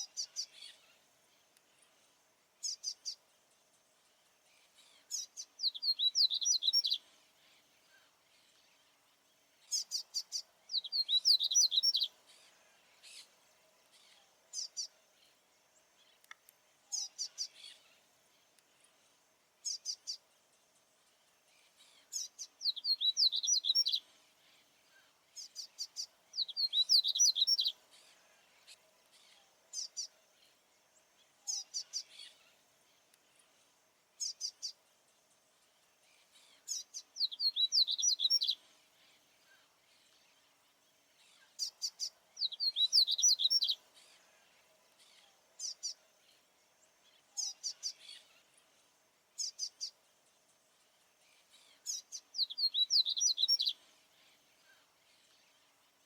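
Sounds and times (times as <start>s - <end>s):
bird singing fast phrases: 4.9s - 7.0s, 9.7s - 12.2s, 22.0s - 24.1s, 25.4s - 27.8s, 36.5s - 38.6s, 41.4s - 43.9s, 51.6s - 53.8s.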